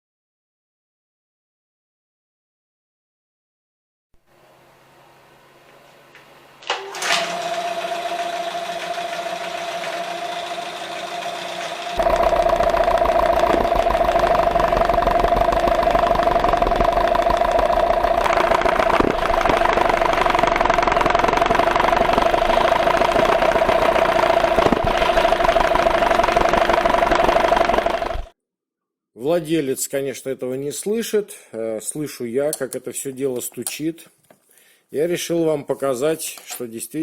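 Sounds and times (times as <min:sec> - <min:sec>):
outboard motor idling with knock: 0:07.8 - 0:28.3.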